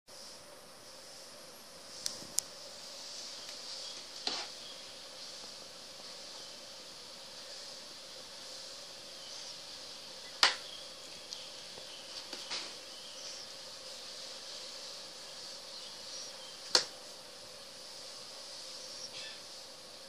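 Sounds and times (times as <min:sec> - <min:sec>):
steady hiss: 0:00.1 - 0:20.0
faint ticks: 0:02.0 - 0:02.6, 0:11.3 - 0:12.6.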